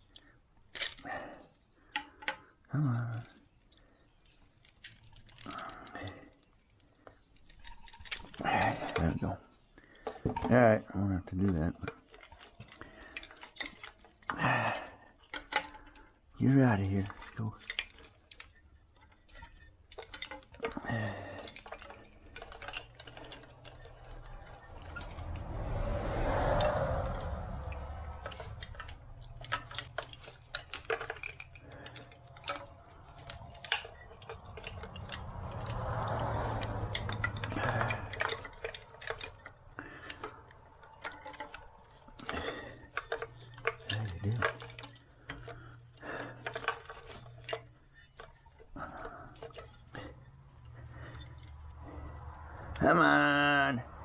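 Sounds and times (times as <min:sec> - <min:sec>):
clicks and rattles of connectors: 0:00.0 - 0:25.7, 0:27.2 - 0:52.8
rushing noise: 0:23.1 - 0:30.5.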